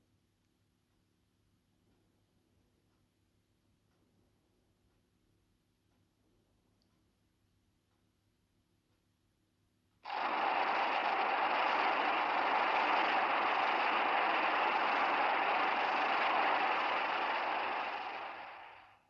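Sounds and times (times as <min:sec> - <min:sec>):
loud steady rushing noise: 0:10.1 - 0:18.9.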